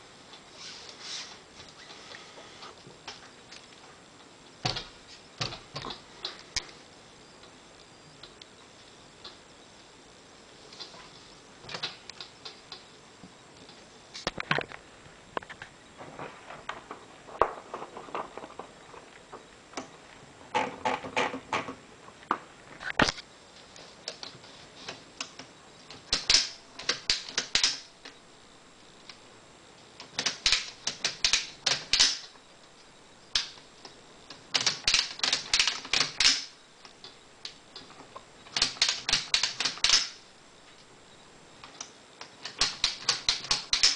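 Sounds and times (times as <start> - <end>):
typewriter clacking: 25.3 - 28.2, 30.0 - 32.4, 34.4 - 36.6, 38.5 - 40.2, 42.3 - 43.9.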